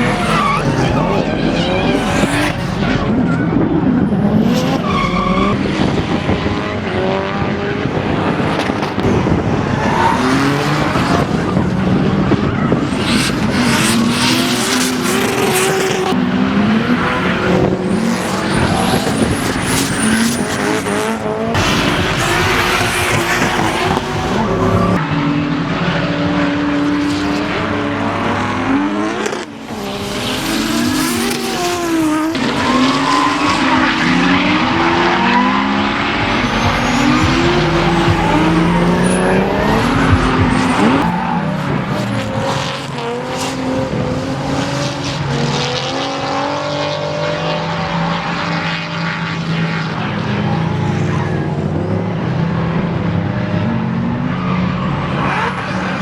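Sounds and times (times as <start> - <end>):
tyre squeal: 0.0 - 3.7, 4.4 - 5.6, 17.9 - 25.0, 29.2 - 34.3, 36.2 - 42.1
race car engines revving: 0.0 - 56.0.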